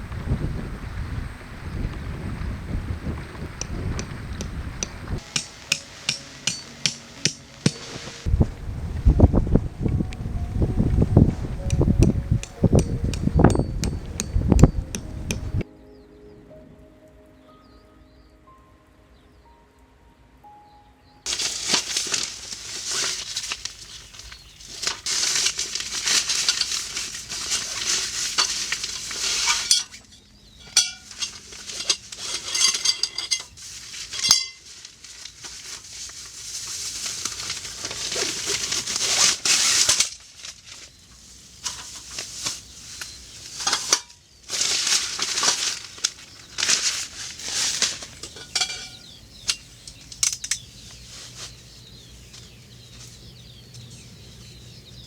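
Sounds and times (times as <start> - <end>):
metal utensils clinking on pots: 4.8 - 8.3, 21.3 - 30.0, 30.6 - 35.3, 43.6 - 50.8
hissing noise: 5.2 - 10.5.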